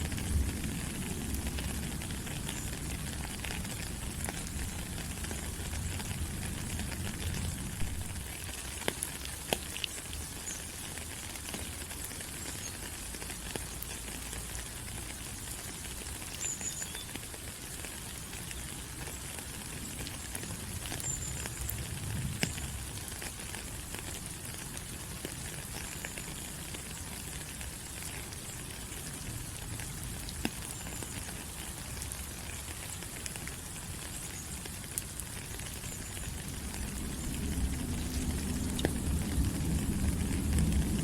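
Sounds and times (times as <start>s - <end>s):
rain on leaves: 0.0s - 41.0s
water drips ticking: 0.1s - 41.0s.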